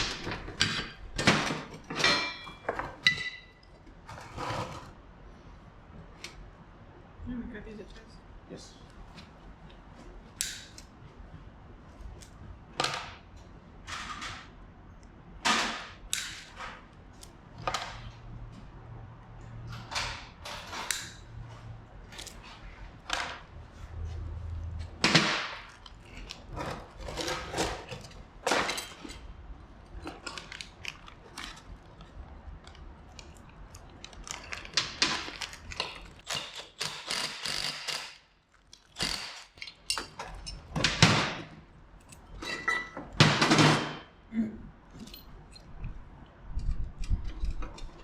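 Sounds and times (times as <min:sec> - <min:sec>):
metal tools clanking: 0:00.2 - 0:03.7, 0:26.0 - 0:29.3, 0:39.2 - 0:40.9, 0:42.0 - 0:44.0.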